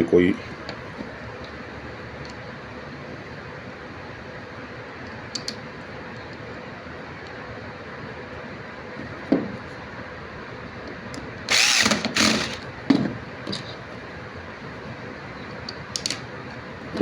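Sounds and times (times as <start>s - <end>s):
power screwdriver whirring: 11.5s - 12.7s.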